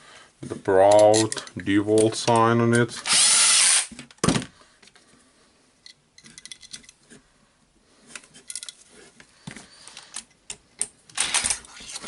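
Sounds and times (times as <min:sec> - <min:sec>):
small parts clicking and clinking: 0:00.8 - 0:02.5, 0:05.8 - 0:07.1, 0:08.2 - 0:08.8.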